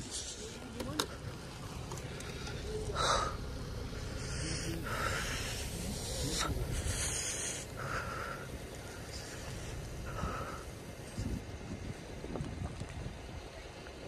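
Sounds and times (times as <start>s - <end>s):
short hissing rushes: 3.2s - 11.4s
wind buffeting microphone: 4.8s - 14.0s.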